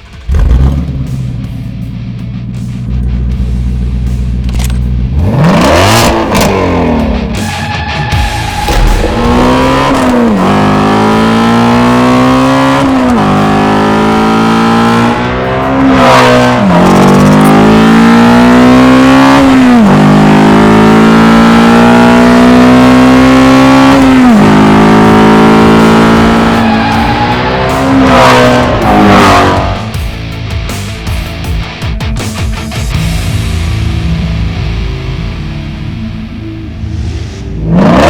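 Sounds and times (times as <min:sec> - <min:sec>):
car engine accelerating hard: 0:00.0 - 0:30.2, 0:33.0 - 0:38.0.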